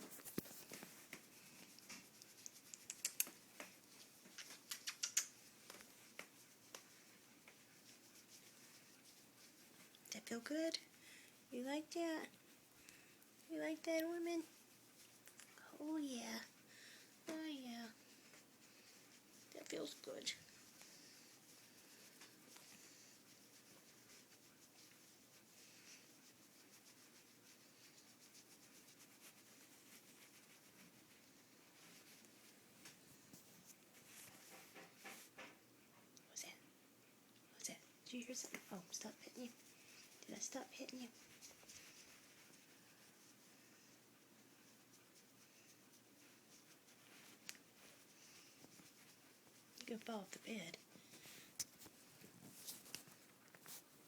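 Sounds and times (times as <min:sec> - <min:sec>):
prairie dog scratching: 0:00.0 - 0:10.8, 0:17.2 - 0:35.5, 0:38.2 - 0:54.0
soft scratchy ticks: 0:00.1 - 0:08.8, 0:11.8 - 0:16.5, 0:38.2 - 0:42.7, 0:45.9 - 0:50.8
sharp little ticks: 0:02.7 - 0:03.4, 0:04.4 - 0:05.4.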